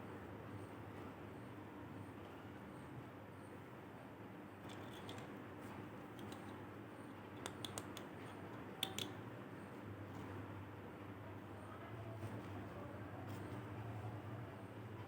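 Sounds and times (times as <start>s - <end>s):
faint steady hum: 0.0s - 15.0s.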